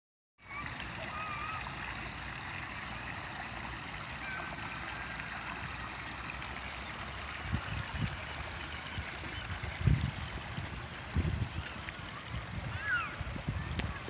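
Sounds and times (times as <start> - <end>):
water running over waterfall: 0.4 - 14.0.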